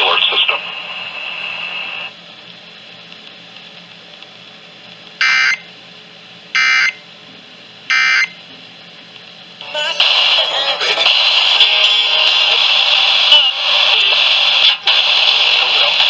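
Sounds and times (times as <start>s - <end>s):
digital data tone bursts: 5.2s - 5.7s, 6.6s - 7.0s, 7.9s - 8.4s.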